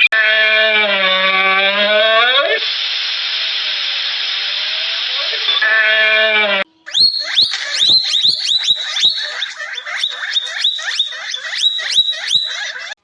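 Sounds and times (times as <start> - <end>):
animal chirping rapidly: 6.9 - 13.0.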